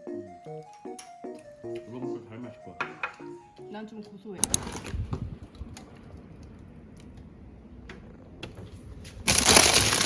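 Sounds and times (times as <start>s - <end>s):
kitchen clicks and taps: 2.8s - 3.4s
plastic packaging crinkling: 9.2s - 10.0s.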